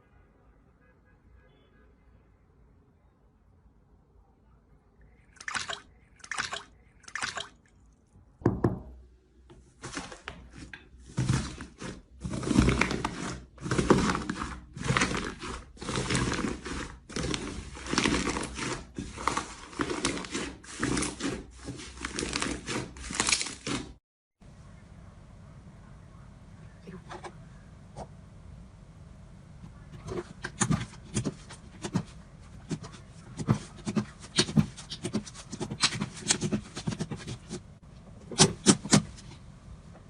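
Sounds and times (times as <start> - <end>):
wet squelches of slime: 5.3 - 8.1.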